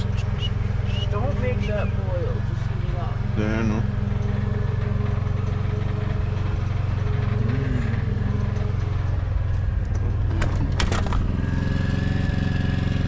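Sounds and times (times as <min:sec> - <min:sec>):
generator engine droning: 0:00.0 - 0:13.0.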